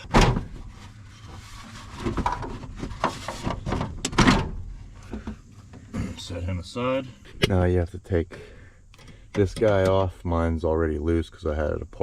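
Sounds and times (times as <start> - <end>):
clicks and clunks of parts: 8.9 - 10.0.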